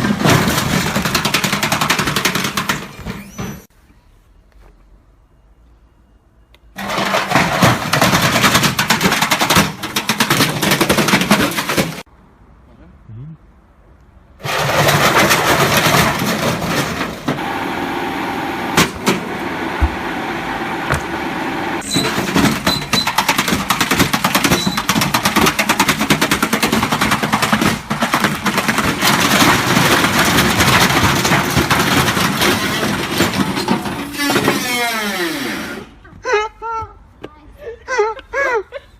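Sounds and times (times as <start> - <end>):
washing machine clattering and banging: 0.0 - 3.7, 6.8 - 12.1, 14.4 - 17.4, 21.8 - 34.6
washing machine whine: 17.2 - 22.3.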